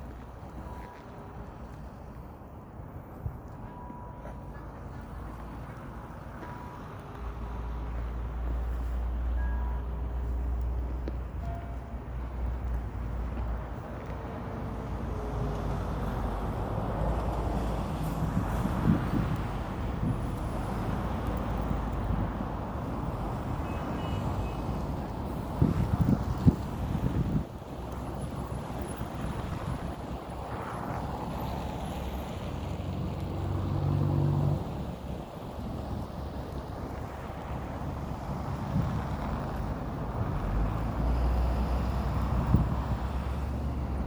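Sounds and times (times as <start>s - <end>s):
street traffic rumble: 0.0s - 44.0s
wind noise on microphone: 15.4s - 32.0s, 36.8s - 44.0s
wind rushing over microphone: 17.6s - 21.3s, 25.2s - 27.9s, 41.8s - 44.0s.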